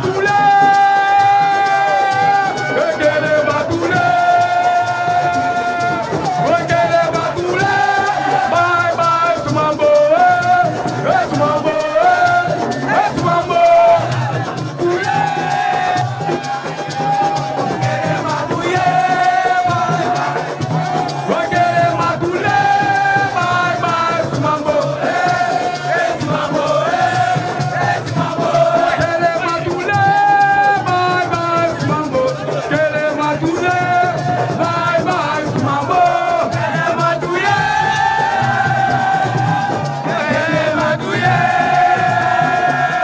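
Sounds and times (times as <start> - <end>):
person singing: 0.0 - 43.0
shaken rattle percussion: 0.0 - 43.0.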